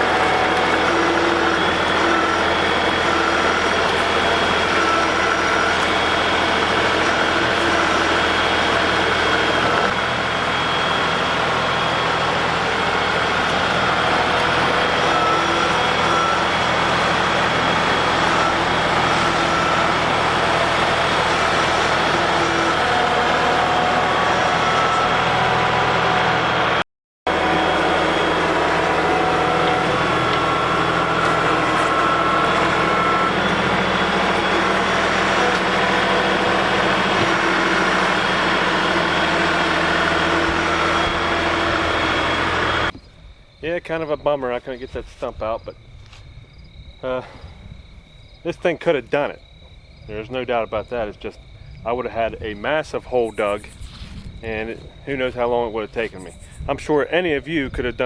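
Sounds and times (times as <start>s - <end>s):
steady whining tones: 0.0s - 44.0s
tractor diesel engine running: 0.0s - 45.6s, 50.1s - 58.0s.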